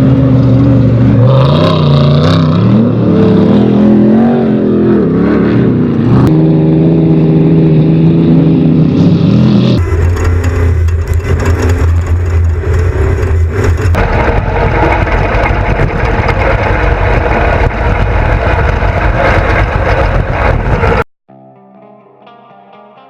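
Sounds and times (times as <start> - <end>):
race vehicle engine running hard: 0.0 - 21.1
quiet electric guitar music: 21.3 - 23.0.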